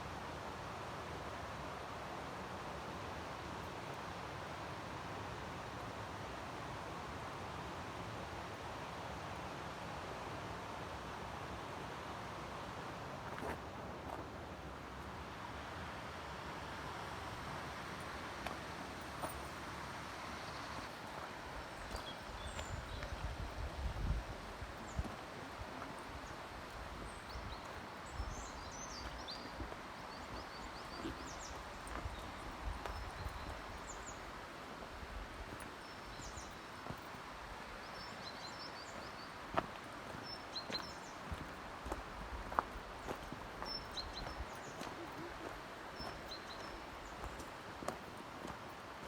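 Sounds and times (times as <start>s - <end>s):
outdoor background hiss: 0.0s - 49.0s
rushing mountain water: 13.4s - 49.0s
small birds chirping: 21.8s - 34.4s, 35.6s - 37.2s, 37.8s - 47.6s.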